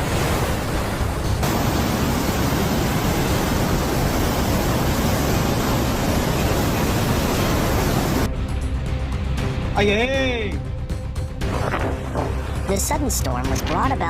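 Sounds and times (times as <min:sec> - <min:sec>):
heavy rain and strong wind: 0:00.0 - 0:10.5.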